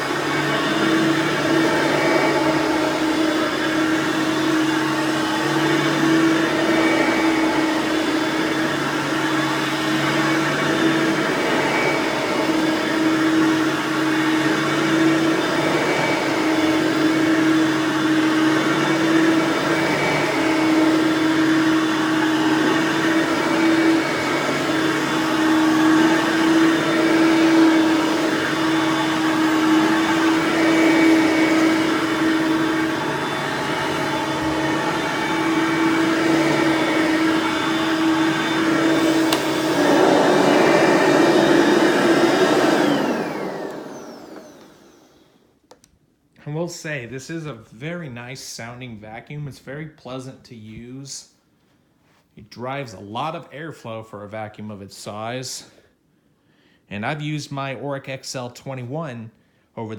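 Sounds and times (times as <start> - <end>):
vacuum cleaner running on carpet: 0.0 - 45.4.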